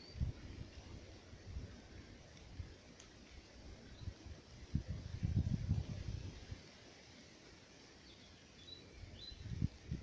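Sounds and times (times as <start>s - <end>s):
wind rumble on microphone: 0.0s - 6.6s, 9.0s - 10.0s
faint rain hiss: 0.0s - 10.0s.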